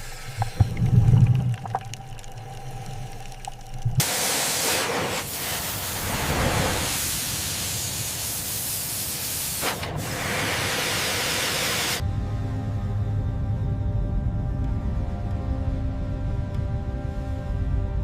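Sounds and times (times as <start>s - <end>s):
loud rushing hiss: 4.0s - 12.0s.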